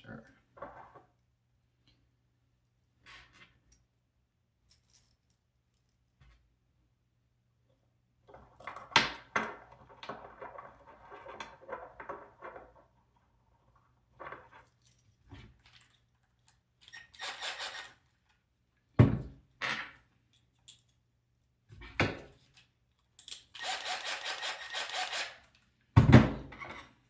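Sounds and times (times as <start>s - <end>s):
screws and nuts clinking: 16.8s - 18.0s, 23.2s - 25.5s.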